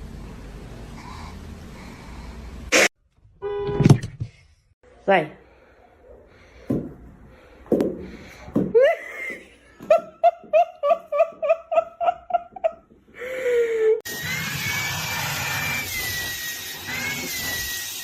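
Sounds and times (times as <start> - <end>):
person laughing hard: 8.7 - 14.0.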